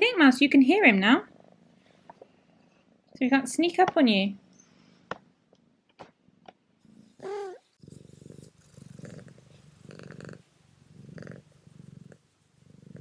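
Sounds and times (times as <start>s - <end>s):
cat purring: 0.9s - 3.0s, 6.3s - 13.0s
cat wavering call: 7.2s - 7.6s.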